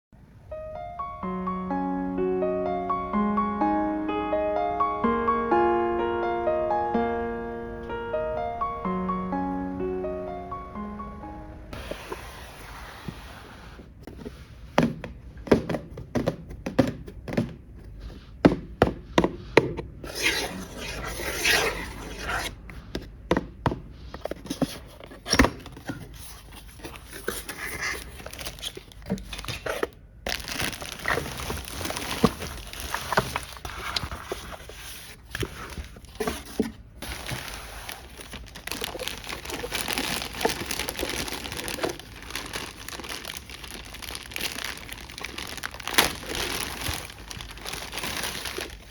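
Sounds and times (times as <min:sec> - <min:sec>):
packaging crinkling and rustling: 0:24.1 - 0:48.9.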